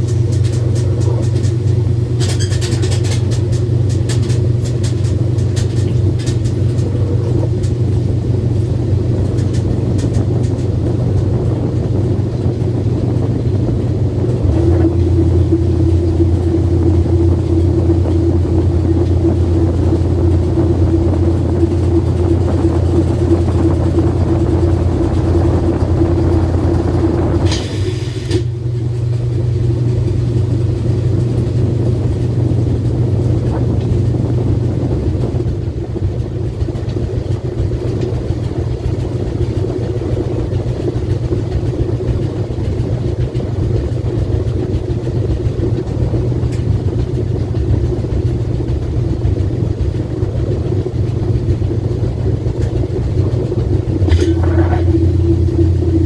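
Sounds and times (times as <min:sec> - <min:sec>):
washing machine spinning: 0:00.0 - 0:56.0.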